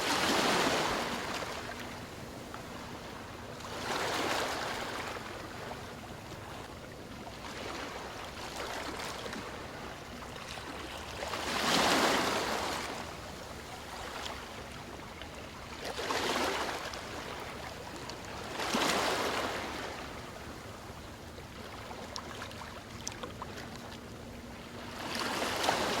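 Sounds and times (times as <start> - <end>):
waves breaking: 0.0 - 26.0.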